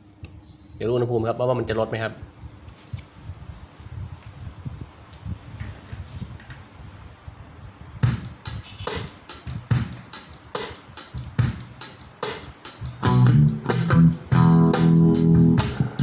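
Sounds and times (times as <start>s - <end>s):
drum beat: 8.0s - 16.0s
pop rock music through speakers: 8.0s - 16.0s
bass and guitar: 12.8s - 16.0s.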